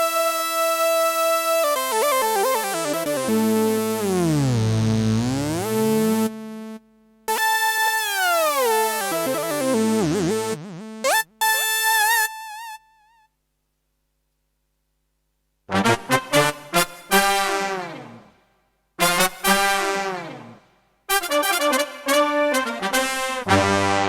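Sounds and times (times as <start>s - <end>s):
synthesizer gliding notes: 1.6s - 12.8s, 17.4s - 18.3s.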